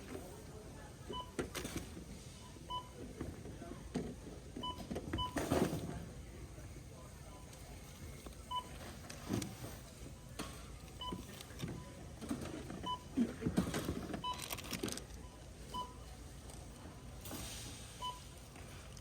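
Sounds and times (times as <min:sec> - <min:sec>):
groceries clattering and rustling: 0:03.0 - 0:06.2, 0:07.9 - 0:15.2
barcode scanner beeps: 0:14.2 - 0:14.6.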